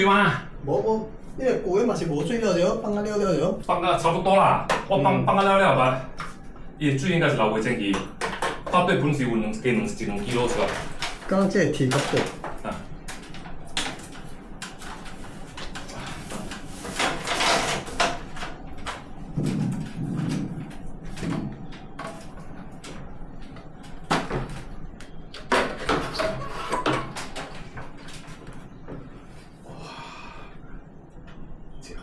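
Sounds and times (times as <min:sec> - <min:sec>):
knocks and clatter of handling: 0:07.8 - 0:09.1, 0:09.9 - 0:29.3.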